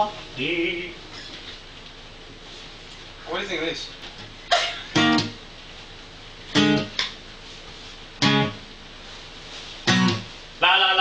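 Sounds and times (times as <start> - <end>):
guitar strummed slowly: 4.5 - 5.4, 6.5 - 7.1, 8.2 - 8.7, 9.8 - 11.0.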